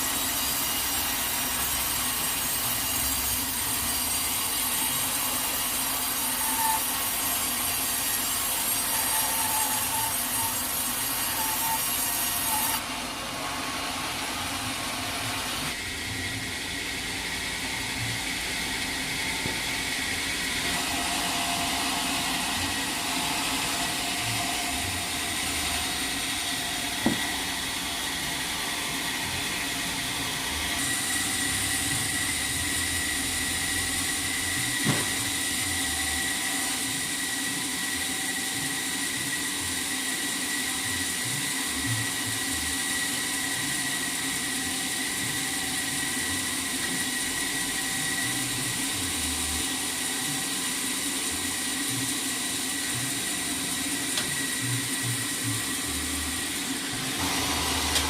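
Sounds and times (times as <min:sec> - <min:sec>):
sawmill saw cutting log: 0:00.0 - 0:58.0.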